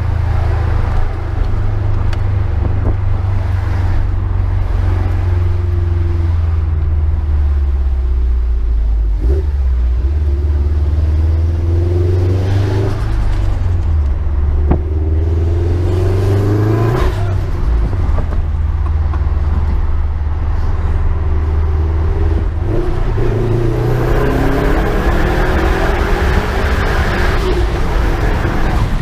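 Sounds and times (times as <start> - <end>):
turbocharged engine revving: 9.2 - 18.2, 21.4 - 29.0.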